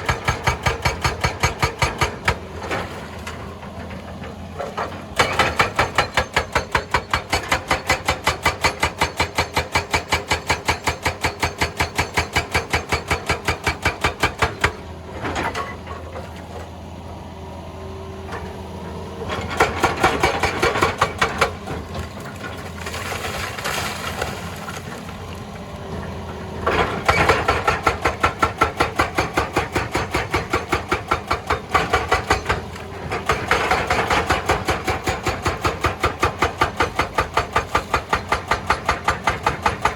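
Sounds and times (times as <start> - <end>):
hydraulic breaker hammering rock: 0.0 - 3.4, 4.1 - 15.9, 19.2 - 24.3, 26.6 - 39.9
diesel engine running: 14.1 - 39.9.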